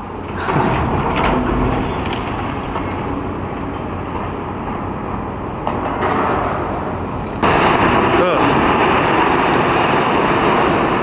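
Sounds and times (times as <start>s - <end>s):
excavator machinery rumble: 0.0s - 11.0s
debris breaking and falling: 0.3s - 3.1s.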